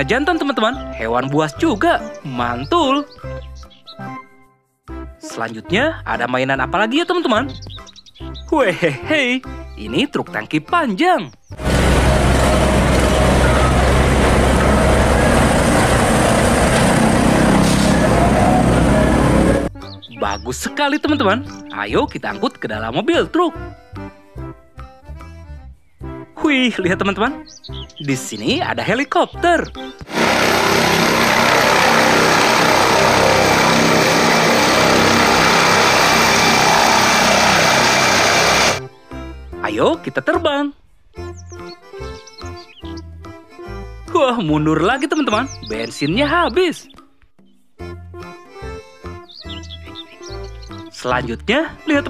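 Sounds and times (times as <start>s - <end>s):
truck engine humming: 11.6s - 19.7s, 30.0s - 38.8s.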